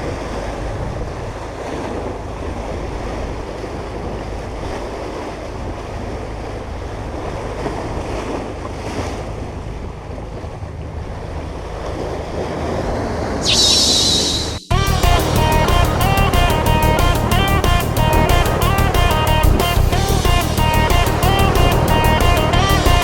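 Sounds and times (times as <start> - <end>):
wind rumbling on microphone: 0.0 - 14.7
sea waves washing on shore: 0.0 - 19.8
loud high warbling sound: 13.4 - 16.9.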